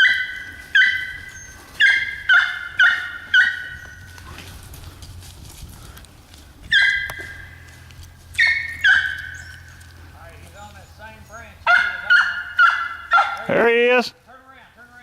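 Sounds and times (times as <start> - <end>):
dog yelping: 0.0 - 4.1, 6.7 - 7.6, 8.3 - 9.9, 11.6 - 13.6.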